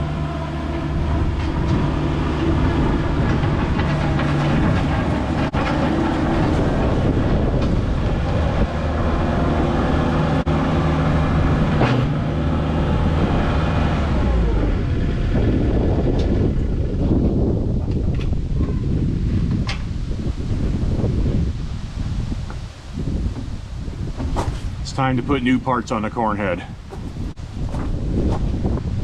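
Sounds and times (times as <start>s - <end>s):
heavy machine engine running: 0.0s - 19.7s
metallic rattling and clanking: 0.7s - 9.5s.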